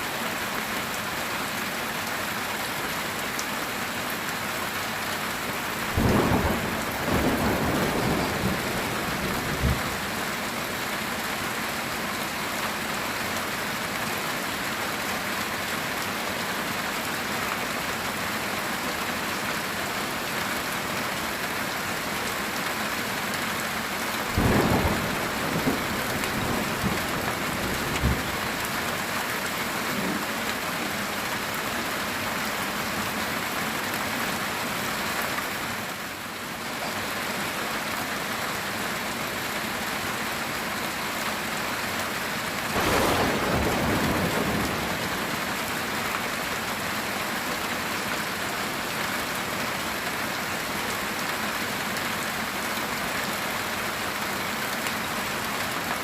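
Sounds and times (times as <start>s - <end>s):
heavy rain on a tin roof: 0.0s - 56.0s
thunder rumbling: 5.9s - 10.2s, 24.3s - 28.8s, 42.7s - 45.5s.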